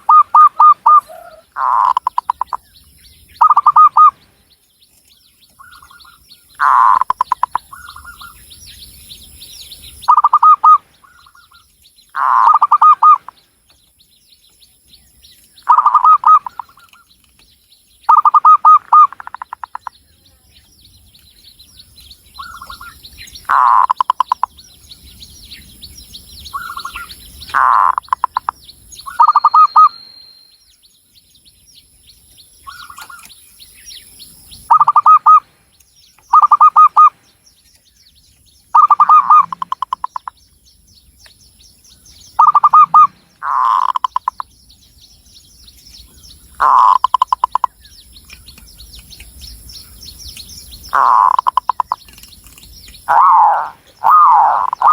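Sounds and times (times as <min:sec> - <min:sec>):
dove cooing: 0:00.0 - 0:02.6, 0:12.2 - 0:13.3, 0:15.7 - 0:16.8, 0:34.7 - 0:35.4, 0:38.8 - 0:40.3, 0:42.4 - 0:44.4, 0:53.1 - 0:54.9
faint high-pitched chirping: 0:00.0 - 0:54.9.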